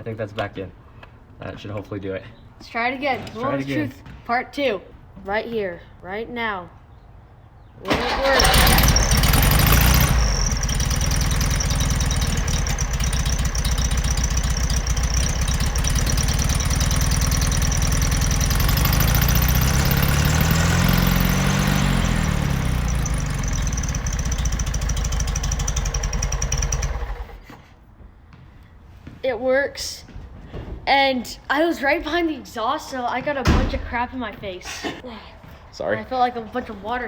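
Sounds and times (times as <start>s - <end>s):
car engine idling: 7.9s - 27.5s
engine revving: 7.9s - 27.5s.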